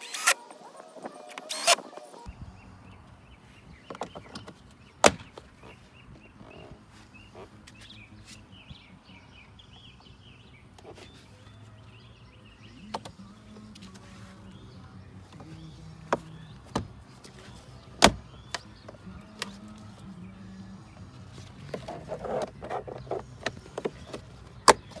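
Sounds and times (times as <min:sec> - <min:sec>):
clicks and knocks on truck door: 0:18.0 - 0:18.6.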